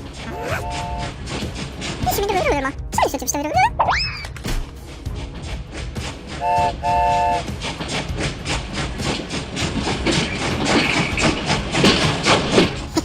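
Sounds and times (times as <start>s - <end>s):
train wheels clickety-clack: 0.0s - 3.5s, 4.5s - 13.0s
train whistle chord blasts: 0.4s - 1.2s, 6.4s - 7.5s.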